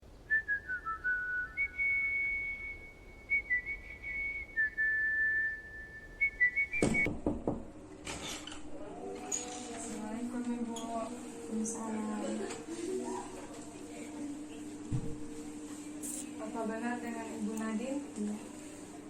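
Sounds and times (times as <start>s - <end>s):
person whistling a slow tune: 0.3s - 7.1s.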